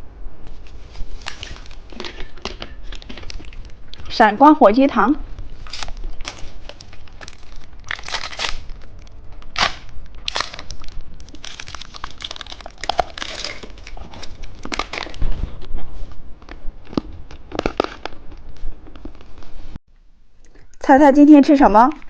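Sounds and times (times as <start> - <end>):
plastic wrapper crinkling: 0.6 - 4.2, 5.4 - 15.3.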